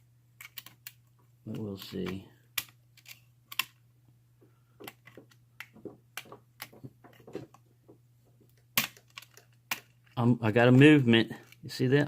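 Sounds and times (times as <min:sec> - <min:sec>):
lock picks clicking and scraping: 0:00.4 - 0:01.1, 0:01.8 - 0:03.8, 0:04.8 - 0:07.6, 0:08.5 - 0:10.2.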